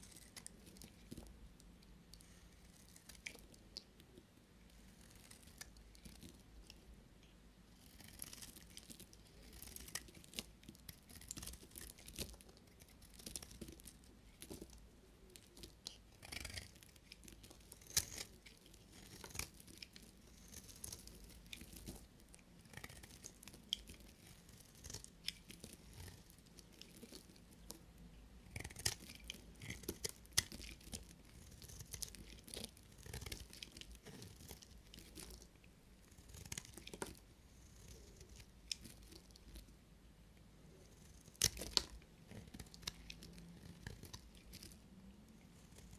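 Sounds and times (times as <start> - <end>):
knife cutting soap bars: 15.4 - 22.0, 28.5 - 35.4, 41.3 - 44.7.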